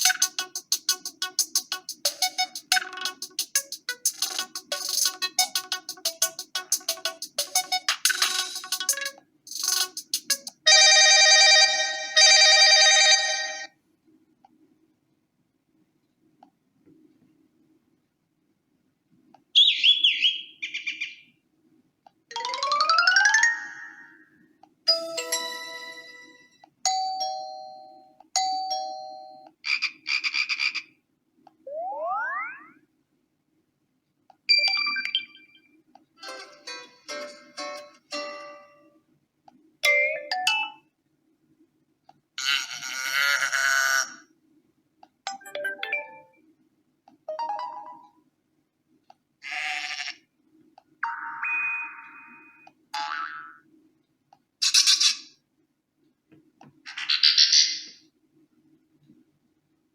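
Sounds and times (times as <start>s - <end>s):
rapid electronic trill: 0.0s - 10.5s
phone ringtone and alert sounds: 2.1s - 13.7s, 22.3s - 24.3s, 24.9s - 26.6s, 31.7s - 32.7s, 34.5s - 38.9s, 39.8s - 40.9s, 45.3s - 46.4s, 47.3s - 48.2s, 51.0s - 52.6s
bright ringing chord: 24.9s - 26.6s.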